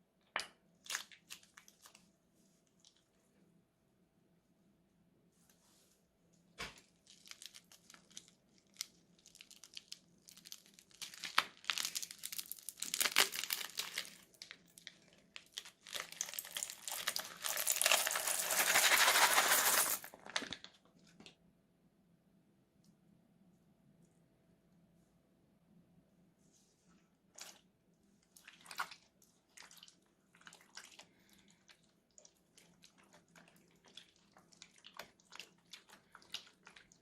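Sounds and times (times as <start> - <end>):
slime crackling and popping: 6.9 - 18.8.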